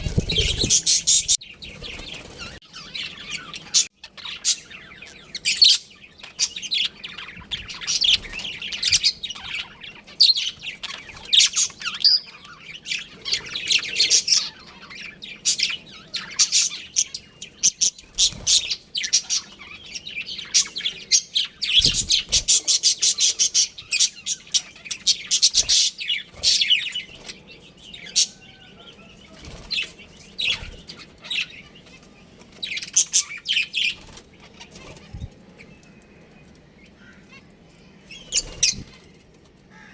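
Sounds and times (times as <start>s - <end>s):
budgerigars chirping: 0.0s - 35.2s, 38.1s - 39.1s.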